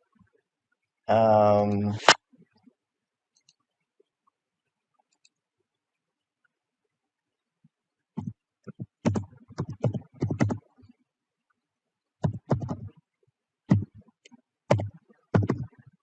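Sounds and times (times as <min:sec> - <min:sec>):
computer mouse clicks: 0:03.3 - 0:03.6, 0:05.1 - 0:05.4, 0:08.2 - 0:10.7, 0:12.2 - 0:12.9
keyboard key taps: 0:08.2 - 0:10.6.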